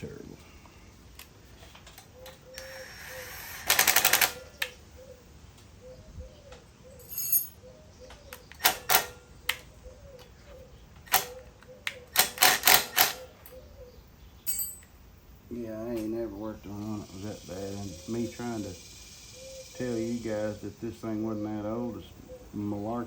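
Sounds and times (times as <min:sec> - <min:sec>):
sharp metallic clicks: 0:01.2 - 0:04.8, 0:08.1 - 0:13.6
ratchet clicking: 0:01.9 - 0:04.7, 0:11.0 - 0:13.4.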